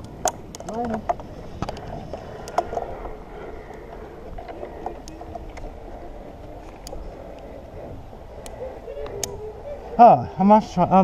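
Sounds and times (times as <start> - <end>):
sharp clicks and light knocks: 0.0 - 2.9
steady low rustle: 0.0 - 10.0.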